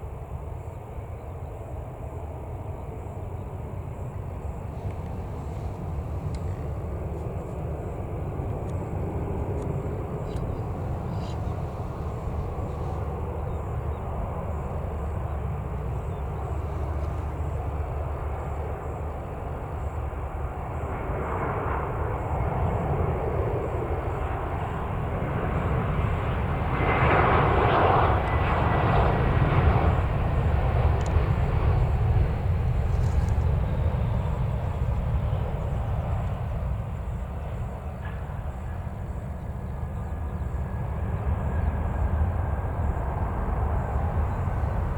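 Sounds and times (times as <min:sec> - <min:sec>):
jet engines landing: 0:00.0 - 0:44.9
steady low rumble: 0:03.1 - 0:21.2, 0:28.3 - 0:44.9.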